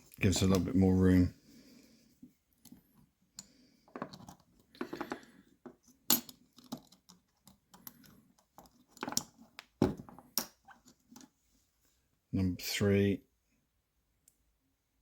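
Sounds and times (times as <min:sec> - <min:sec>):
metal lock parts clinking: 0:06.0 - 0:09.6.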